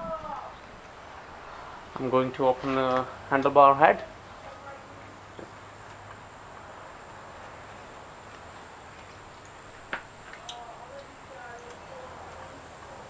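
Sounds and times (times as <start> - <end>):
steady hiss with high tone: 0.2 - 13.0
faint ticks: 8.2 - 13.0.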